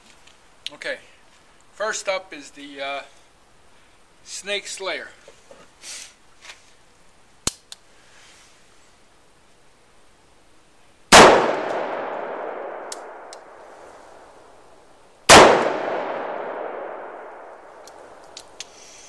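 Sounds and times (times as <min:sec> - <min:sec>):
gunshots with long echo: 0:11.1 - 0:14.5, 0:15.3 - 0:18.2.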